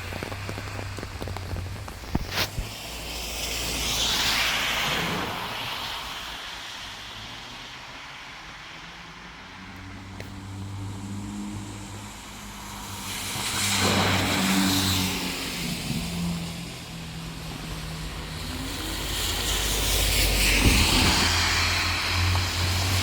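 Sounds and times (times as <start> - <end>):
car engines running low: 0.0 - 6.2
tyres hissing through water: 0.0 - 23.0.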